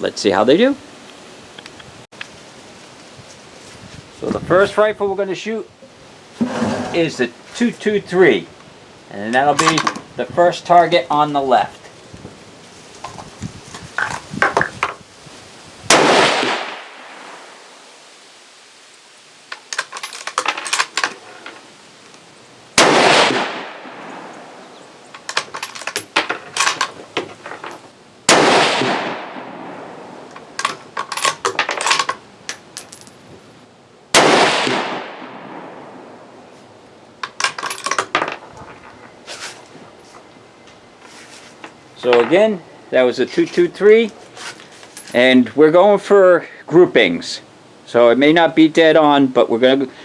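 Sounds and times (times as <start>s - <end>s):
rifle shots with echo: 15.9s - 17.0s, 22.8s - 24.1s, 28.3s - 29.7s, 34.2s - 35.9s.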